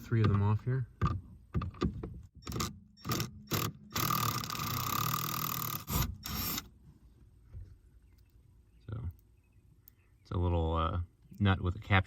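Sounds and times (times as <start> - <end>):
ratchet clicking: 2.4 - 6.6.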